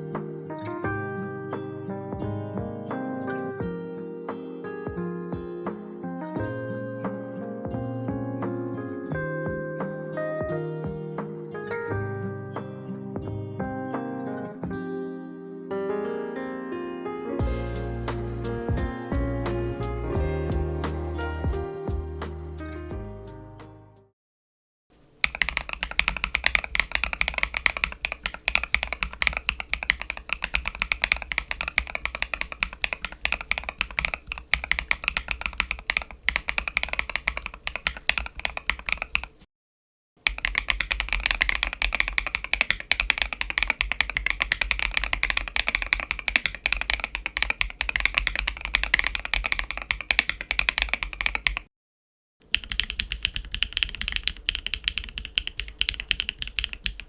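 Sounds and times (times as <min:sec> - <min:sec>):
fast typing on mechanical keyboard: 0:25.0 - 0:39.4, 0:40.2 - 0:51.7, 0:52.4 - 0:57.0.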